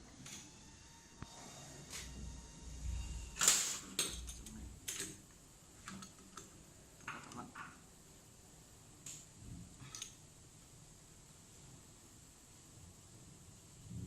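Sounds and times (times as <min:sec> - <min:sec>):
metal parts and tools clicking: 0:03.4 - 0:05.2, 0:09.8 - 0:10.2.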